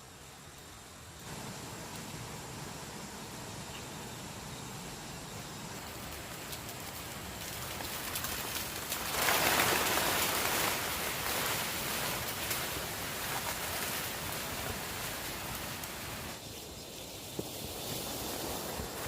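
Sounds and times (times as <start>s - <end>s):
rain patter: 4.7s - 16.4s.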